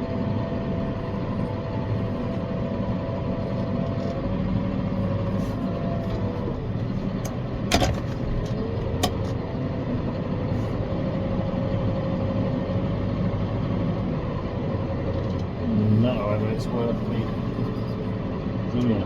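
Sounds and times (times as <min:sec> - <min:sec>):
tractor engine running: 0:00.0 - 0:19.0.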